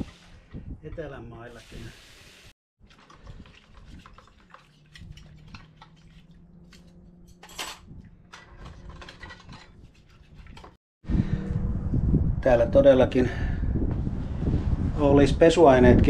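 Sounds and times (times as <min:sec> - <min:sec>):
dishes and cutlery clinking: 0:06.7 - 0:10.7.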